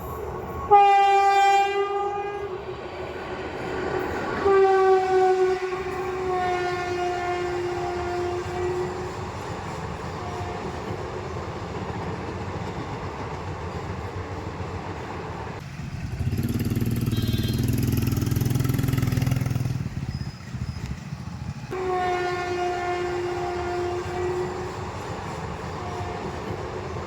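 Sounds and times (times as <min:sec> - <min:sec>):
train rumbling past: 0:00.0 - 0:27.0
train horn blast: 0:00.4 - 0:02.7, 0:04.4 - 0:09.2, 0:10.2 - 0:10.8, 0:16.7 - 0:18.8, 0:21.7 - 0:24.8, 0:25.8 - 0:26.6.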